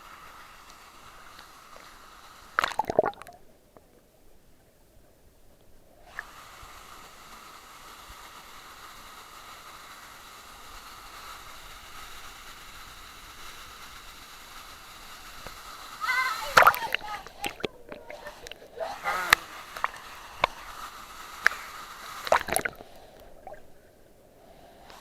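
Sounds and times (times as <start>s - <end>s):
hiss of moving water: 0.0s - 4.2s, 5.7s - 25.0s
water splashing: 2.5s - 3.4s, 15.2s - 23.8s.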